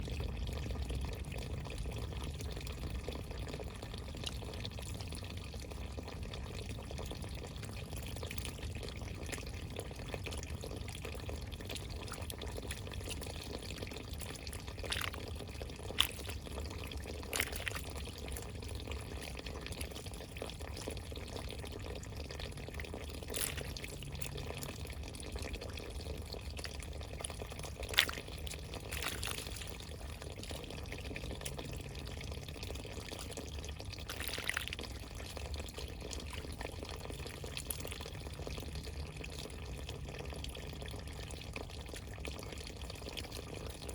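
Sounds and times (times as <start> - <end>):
sharp water drips: 0.1 - 43.9
running water: 9.2 - 38.8.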